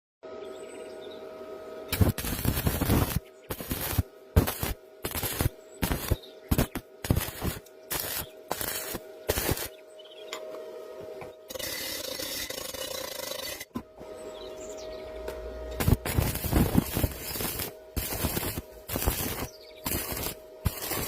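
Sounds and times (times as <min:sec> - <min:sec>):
faint steady hum: 0:00.2 - 0:21.0
arc welding crackling: 0:01.9 - 0:09.8, 0:11.5 - 0:13.7, 0:15.4 - 0:21.0.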